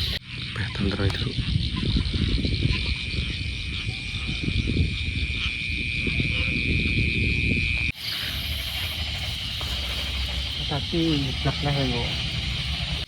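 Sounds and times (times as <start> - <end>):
crickets trilling: 0.0 - 13.0
handling noise rumble: 7.9 - 13.0.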